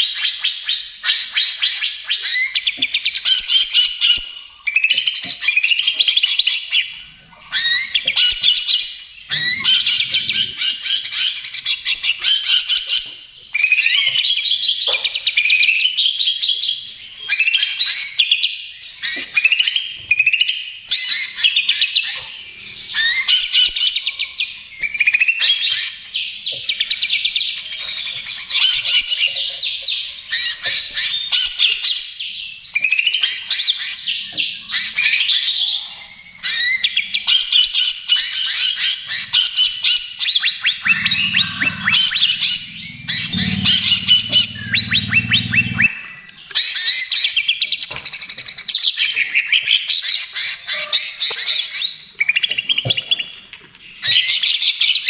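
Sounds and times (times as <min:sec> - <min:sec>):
bird singing chattering song: 0:40.8 - 0:46.2.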